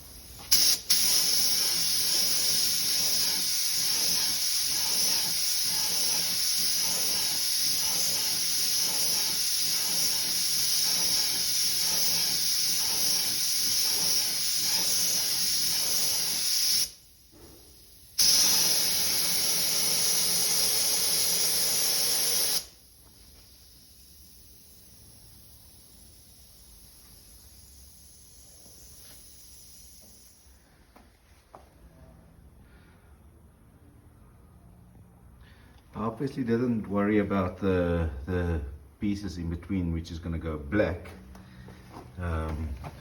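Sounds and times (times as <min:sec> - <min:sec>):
paint spray gun hissing: 0:00.0 - 0:17.0, 0:18.0 - 0:30.6.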